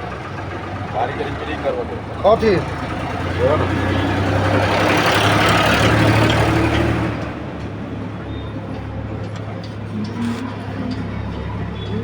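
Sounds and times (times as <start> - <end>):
vehicle passing loudly: 0.0 - 7.5
low traffic hum: 0.0 - 12.0.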